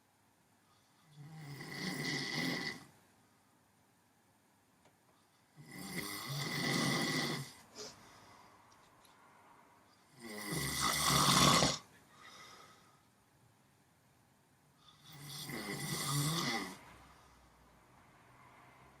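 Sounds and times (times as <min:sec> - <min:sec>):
person snoring: 0:00.8 - 0:02.9, 0:05.5 - 0:07.9, 0:10.1 - 0:12.8, 0:14.9 - 0:17.0.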